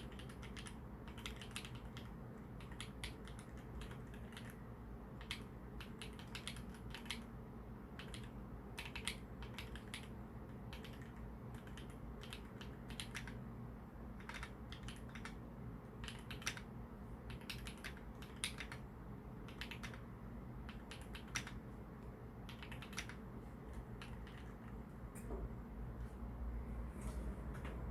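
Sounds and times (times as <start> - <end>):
mechanical keyboard typing clicks: 0.0 - 4.6, 5.2 - 7.3, 8.0 - 10.1, 10.7 - 13.4, 14.2 - 15.4, 16.0 - 16.7, 17.3 - 18.8, 19.4 - 20.0, 20.6 - 21.6, 22.5 - 24.6.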